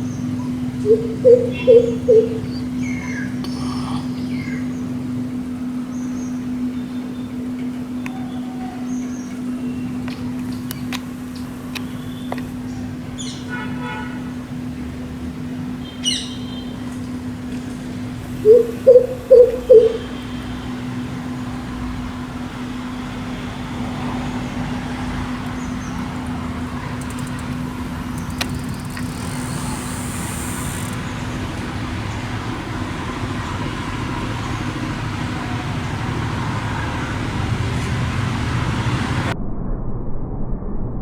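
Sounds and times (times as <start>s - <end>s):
bird deep hoots: 0.0s - 5.9s, 17.9s - 22.7s
traffic noise: 0.0s - 39.4s
constant low hum: 0.0s - 41.0s.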